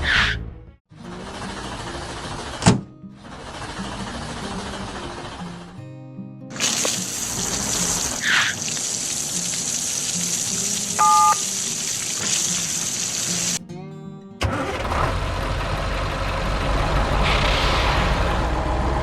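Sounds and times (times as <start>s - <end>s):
storm rain hissing: 6.6s - 13.6s, 16.8s - 18.6s
soft background music: 8.7s - 13.0s
two-tone electronic beep: 11.0s - 11.4s
whoosh: 17.0s - 18.8s.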